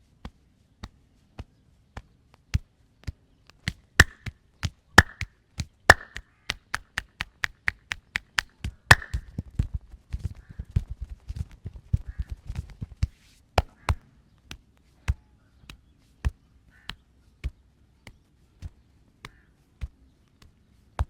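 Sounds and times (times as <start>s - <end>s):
hands slapping skin: 3.5s - 9.3s, 13.0s - 20.6s
ringing claps: 4.0s - 4.2s, 5.0s - 5.3s, 5.9s - 9.2s.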